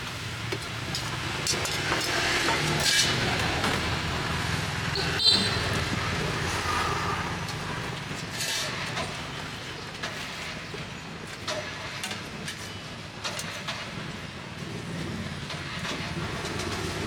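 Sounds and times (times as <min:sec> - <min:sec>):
car engines running: 0:00.0 - 0:10.8.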